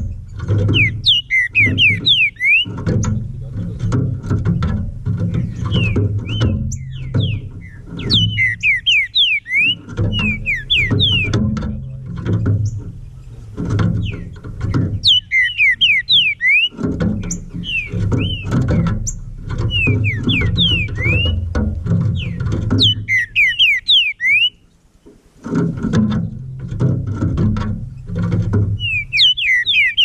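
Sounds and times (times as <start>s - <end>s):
background music with low beat: 0.0s - 8.8s, 9.8s - 16.0s, 17.0s - 23.2s
bird singing clear whistles: 0.7s - 2.8s, 5.5s - 11.4s, 15.0s - 21.4s, 22.2s - 24.6s, 28.8s - 30.0s.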